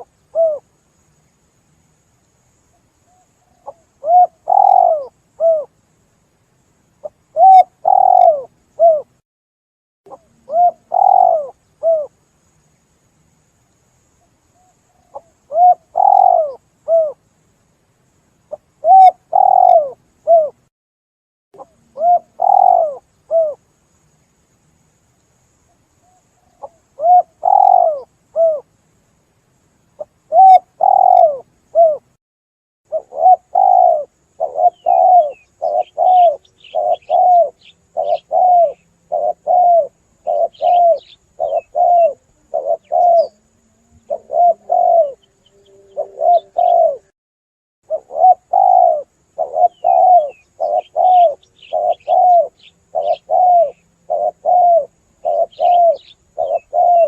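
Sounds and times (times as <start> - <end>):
dove cooing: 0.0 - 0.6, 3.4 - 5.7, 7.0 - 9.1, 10.1 - 12.1, 14.6 - 17.2, 18.5 - 20.6, 21.6 - 23.6, 26.4 - 28.7, 30.0 - 32.1, 32.9 - 47.1, 47.9 - 57.0
small birds chirping: 2.7 - 5.7, 7.0 - 9.1, 10.1 - 12.6, 14.2 - 17.3, 18.4 - 20.6, 21.6 - 23.6, 25.1 - 28.6, 29.9 - 32.0, 32.9 - 47.1, 47.9 - 57.0.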